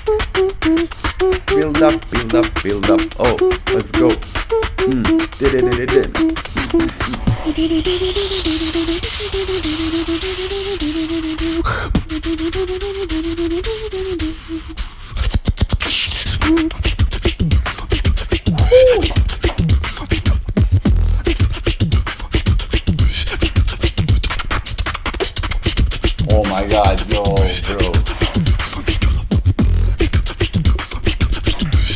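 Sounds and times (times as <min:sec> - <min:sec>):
beatboxing beat with clicks: 0:00.0 - 0:07.6, 0:11.3 - 0:31.9
hummed melody: 0:00.0 - 0:11.6, 0:26.2 - 0:29.9
steady hiss: 0:00.0 - 0:15.1.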